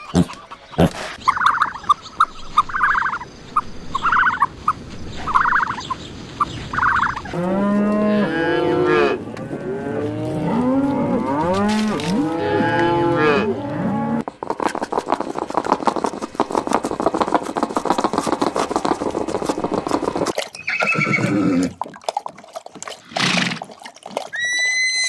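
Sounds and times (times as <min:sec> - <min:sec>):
cattle mooing: 0:07.3 - 0:14.2.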